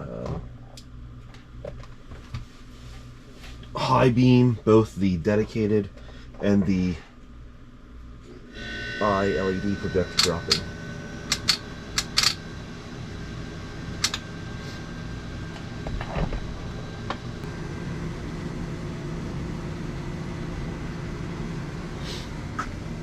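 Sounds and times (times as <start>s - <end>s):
cooling fan hum: 0.0s - 23.0s
sharp clicks: 11.3s - 12.4s.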